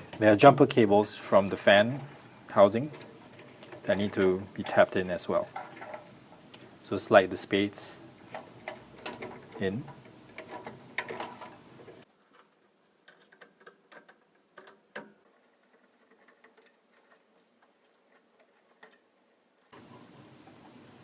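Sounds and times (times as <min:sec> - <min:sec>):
metal terminals clicking and tapping: 0:01.9 - 0:06.7, 0:08.2 - 0:20.6.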